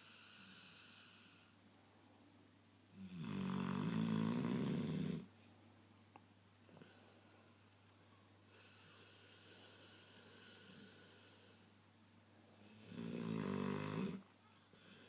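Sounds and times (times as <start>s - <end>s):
dog snoring: 0.0s - 1.4s, 3.0s - 5.3s, 8.5s - 11.4s, 12.6s - 14.2s.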